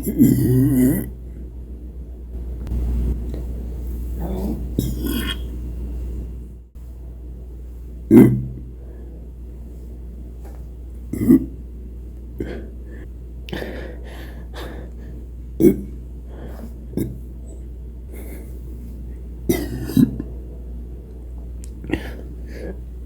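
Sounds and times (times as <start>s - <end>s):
person burping: 0.0s - 1.2s, 4.8s - 5.5s, 8.1s - 8.7s, 11.1s - 11.6s, 15.6s - 16.0s, 16.9s - 17.3s, 19.5s - 20.3s
breathing: 8.7s - 10.0s, 12.4s - 15.3s, 16.2s - 16.9s, 18.1s - 19.2s, 21.9s - 22.9s.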